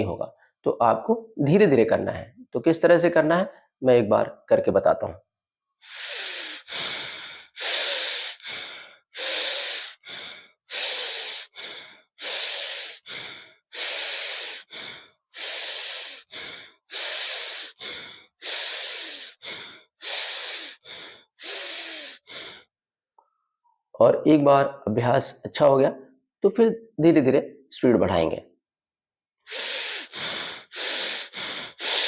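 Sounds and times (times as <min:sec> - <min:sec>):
man breathing through nose: 0:05.8 - 0:22.7, 0:29.5 - 0:32.0.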